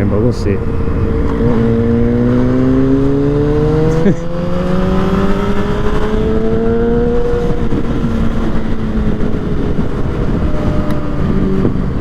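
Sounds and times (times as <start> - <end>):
motorcycle engine running: 0.0 - 12.0
wind noise on microphone: 0.0 - 12.0.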